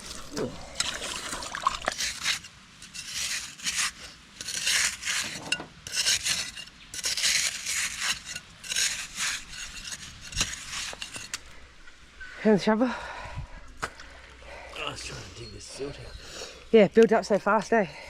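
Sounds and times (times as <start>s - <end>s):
shovel scraping wet silt: 0.0s - 11.4s.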